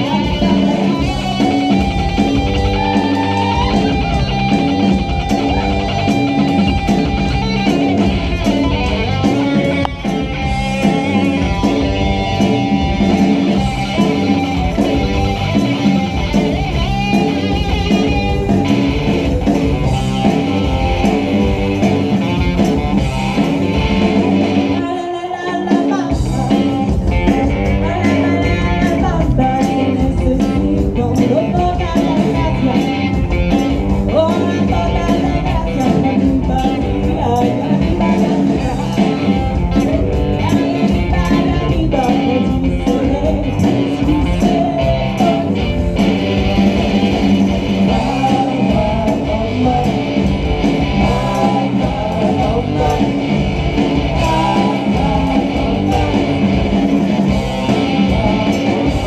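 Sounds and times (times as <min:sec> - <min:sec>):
person singing: 0:00.0 - 0:22.9, 0:23.6 - 0:59.0
steady drum beat: 0:00.0 - 0:24.8, 0:26.0 - 0:59.0
guitar: 0:00.0 - 0:59.0
rock band playing live: 0:00.0 - 0:59.0.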